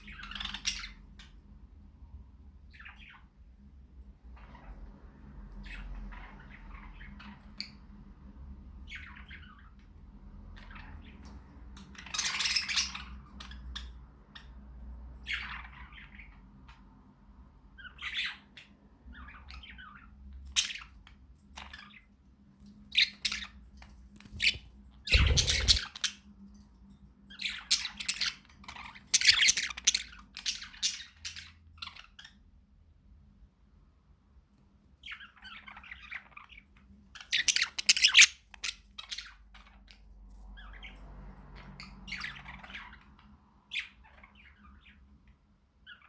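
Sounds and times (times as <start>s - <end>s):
budgerigars chattering and squawking: 0.0s - 1.0s, 24.3s - 26.2s, 27.3s - 32.4s, 35.0s - 40.0s.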